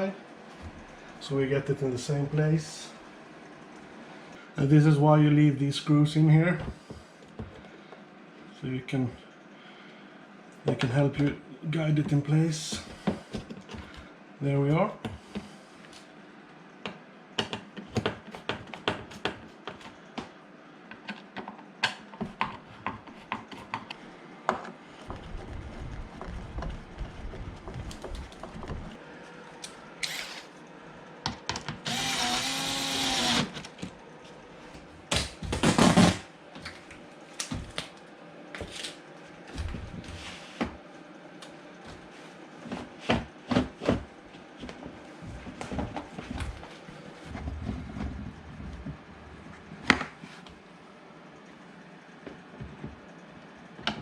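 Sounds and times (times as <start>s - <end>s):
power driver running screws: 30.0s - 30.5s, 31.8s - 33.6s.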